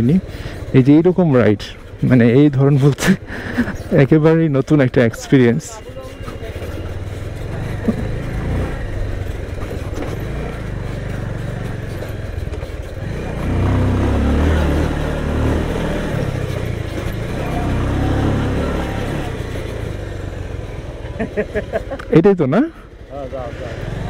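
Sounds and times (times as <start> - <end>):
motorcycle engine under load: 5.6 - 24.0.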